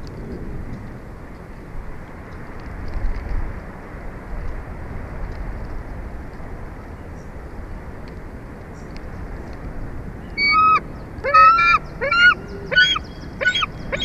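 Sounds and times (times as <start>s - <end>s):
wind buffeting microphone: 0.0s - 14.0s
faint high ticks: 8.0s - 9.7s.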